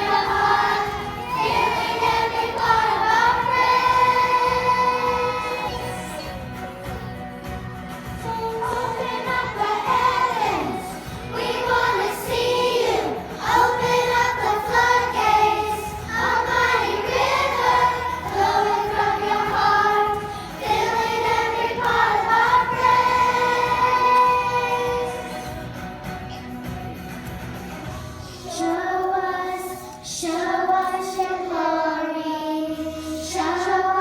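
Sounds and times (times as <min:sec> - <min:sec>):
voices singing long held notes: 0:00.0 - 0:06.4, 0:08.2 - 0:25.7
steady musical accompaniment: 0:00.0 - 0:34.0.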